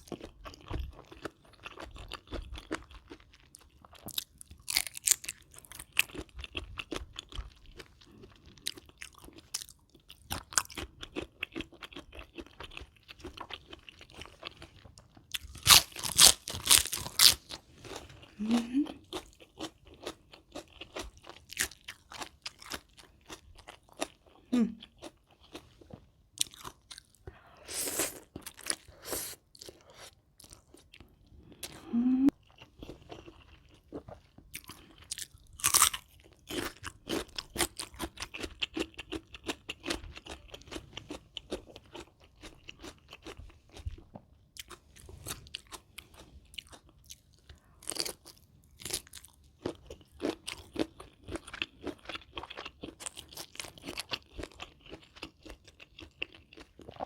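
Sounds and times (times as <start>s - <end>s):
crunching and chewing food: 0.0s - 57.0s
person humming low: 31.8s - 32.3s.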